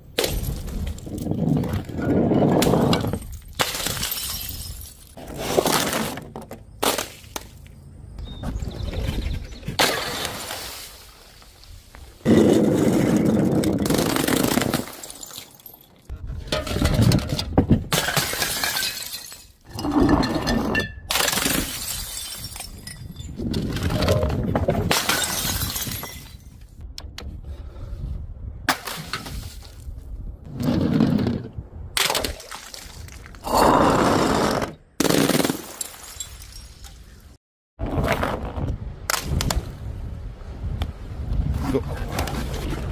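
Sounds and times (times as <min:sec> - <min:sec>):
glass bottles shattering: 0:02.6 - 0:05.2, 0:13.9 - 0:17.1, 0:17.9 - 0:23.5, 0:24.9 - 0:26.6, 0:35.4 - 0:37.2.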